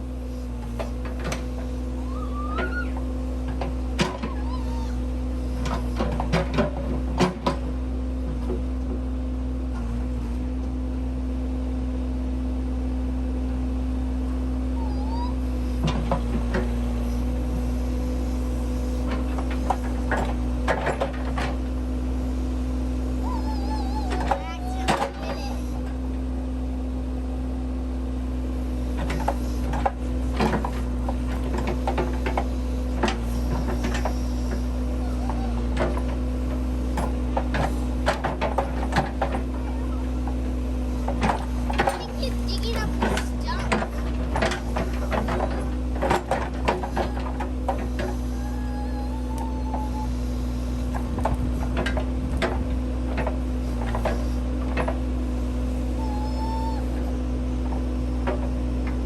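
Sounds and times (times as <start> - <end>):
backhoe engine running: 0.0 - 59.0
machine knocks and clanks: 40.2 - 48.2.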